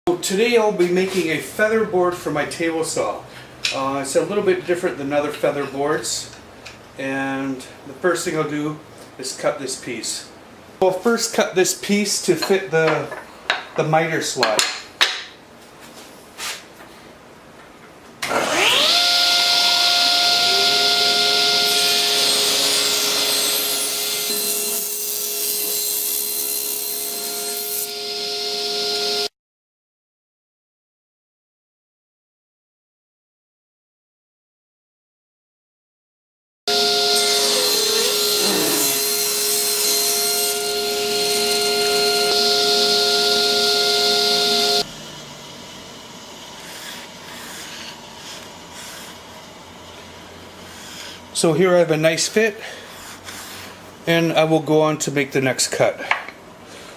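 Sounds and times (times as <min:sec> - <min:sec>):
table saw cutting wood: 0:18.2 - 0:29.3, 0:36.7 - 0:52.3.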